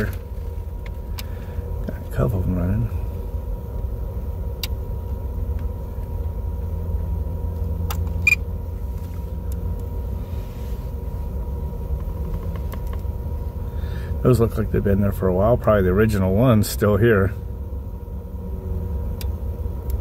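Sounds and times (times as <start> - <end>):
car engine idling: 0.0 - 20.0.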